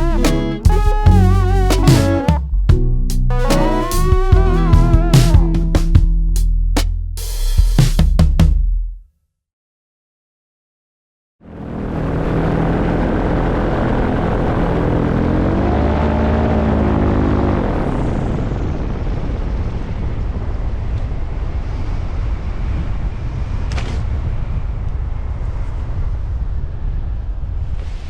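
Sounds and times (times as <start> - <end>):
propeller engine running: 11.4 - 21.4
loud rush of air: 11.8 - 28.0.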